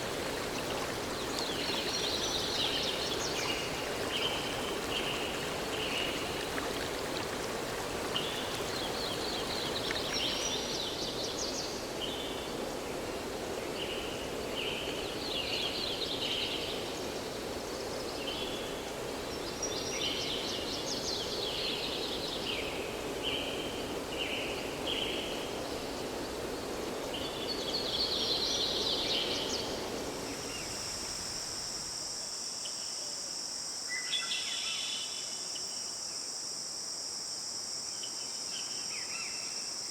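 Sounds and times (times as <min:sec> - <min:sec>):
crickets chirring: 0:00.0 - 0:11.2, 0:16.8 - 0:39.9
songbird singing: 0:00.0 - 0:11.4
rushing stream water: 0:00.0 - 0:32.2.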